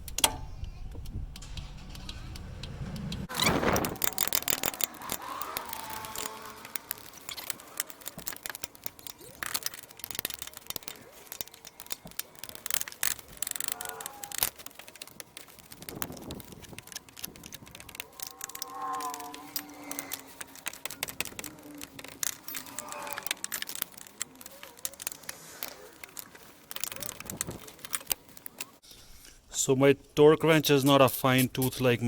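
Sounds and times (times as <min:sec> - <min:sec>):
ratchet wrench clicking: 0:01.0 - 0:28.8
metal hand tools clattering: 0:03.3 - 0:28.8.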